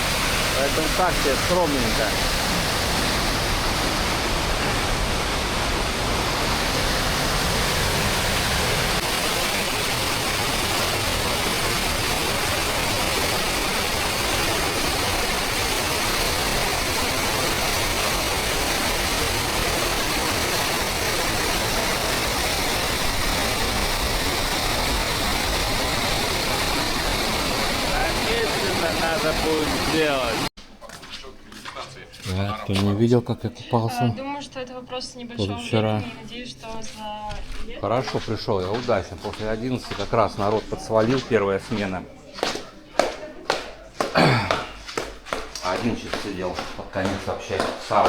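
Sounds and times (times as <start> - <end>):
water rushing through dam gate: 0.0 - 30.5.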